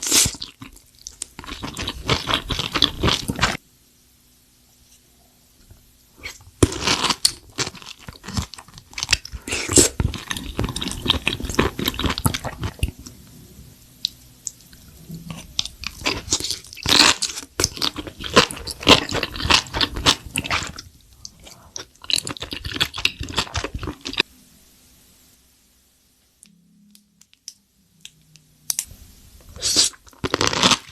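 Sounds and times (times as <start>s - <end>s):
crunchy chewing: 0.0s - 3.6s, 6.2s - 13.2s, 14.0s - 24.2s, 29.5s - 30.9s.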